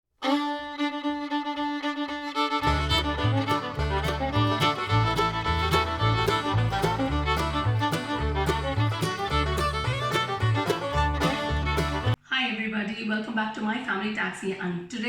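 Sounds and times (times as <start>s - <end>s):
string melody: 0.2s - 12.2s
bass line: 2.3s - 12.2s
steady beat: 2.6s - 12.2s.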